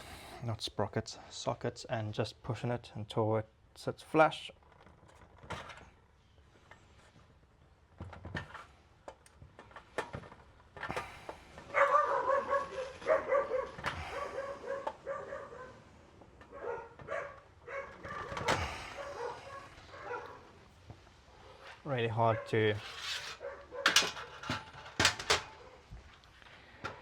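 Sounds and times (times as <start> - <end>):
dog barking: 11.7 - 20.6, 22.2 - 22.7, 23.4 - 24.4, 25.5 - 25.9.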